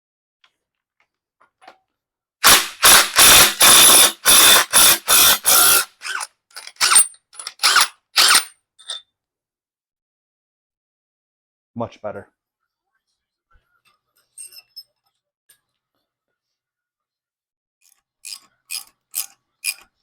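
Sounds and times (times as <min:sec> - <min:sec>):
impact wrench hammering: 0:02.4 - 0:08.5.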